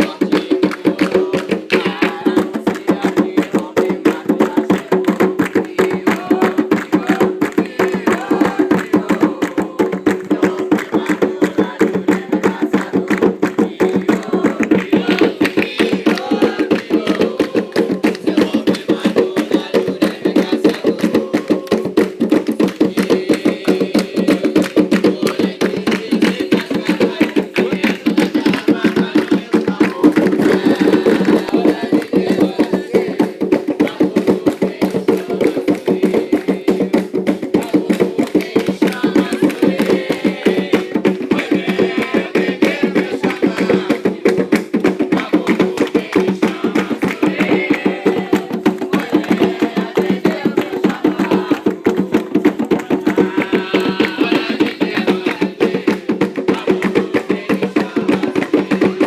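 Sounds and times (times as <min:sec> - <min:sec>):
fast hand drumming: 0:00.0 - 0:59.0
faint chanting voices: 0:05.6 - 0:22.0, 0:45.1 - 0:59.0.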